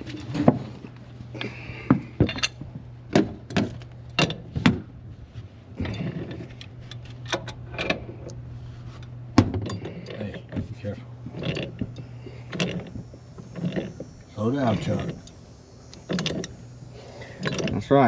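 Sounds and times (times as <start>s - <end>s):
steady low hum: 0.0s - 18.0s
metal tools clinking and knocking: 2.2s - 2.6s, 17.4s - 17.9s.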